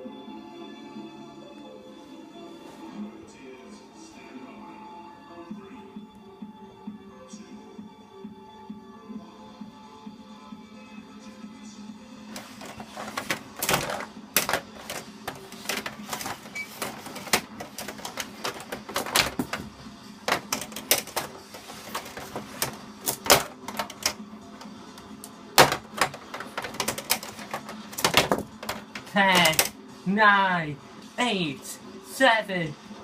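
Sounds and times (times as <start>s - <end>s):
toy robots clattering and knocking: 12.4s - 19.7s, 20.3s - 24.2s, 25.6s - 29.7s.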